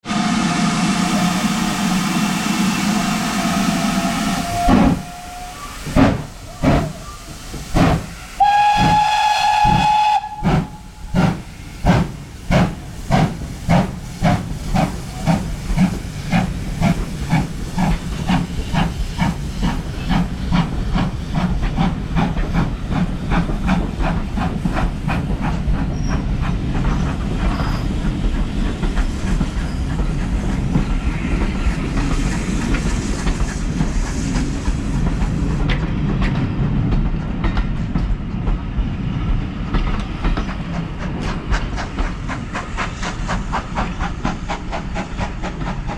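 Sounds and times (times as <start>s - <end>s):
steam whistle blast: 0.1s - 7.4s, 8.2s - 11.0s
steam hissing: 0.1s - 35.7s, 40.1s - 45.9s
steam locomotive chuffing: 0.1s - 45.9s.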